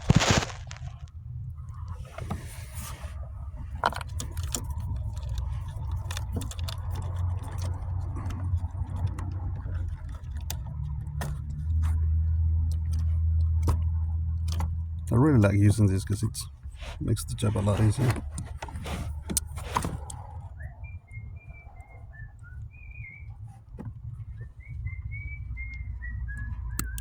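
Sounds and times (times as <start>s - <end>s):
small parts clicking and rattling: 3.7s - 11.9s.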